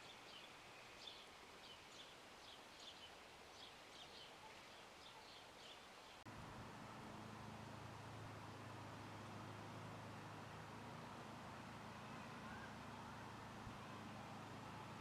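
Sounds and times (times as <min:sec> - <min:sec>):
steady outdoor hiss: 0:00.0 - 0:15.0
songbird chirping: 0:07.0 - 0:15.0.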